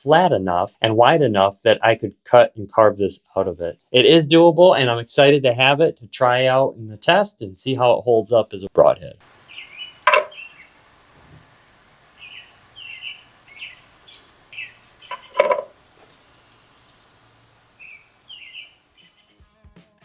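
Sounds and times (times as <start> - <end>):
small songbird chirping: 9.2 - 19.4.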